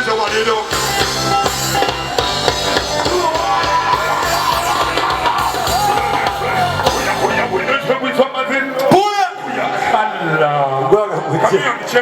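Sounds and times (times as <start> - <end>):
band music with drums bass guitar: 0.0 - 8.1.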